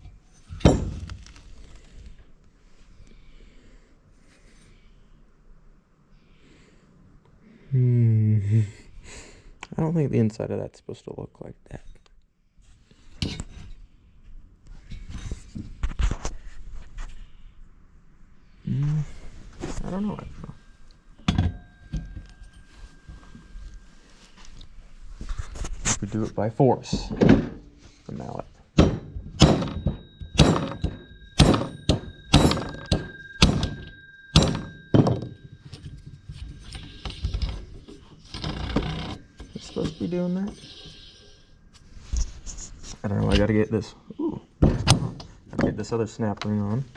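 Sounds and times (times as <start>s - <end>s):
thin metallic ring: 19.2s - 25.6s, 26.8s - 43.6s
metal parts clicking and knocking: 28.8s - 41.1s.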